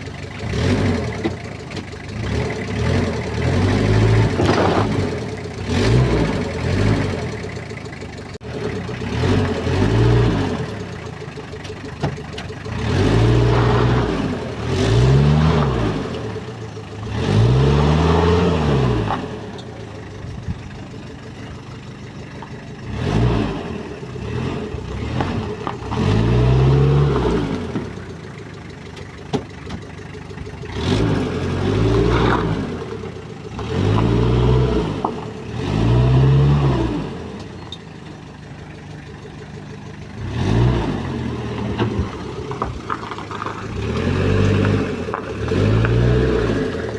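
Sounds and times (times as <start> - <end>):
diesel engine revving: 0.0 - 46.9.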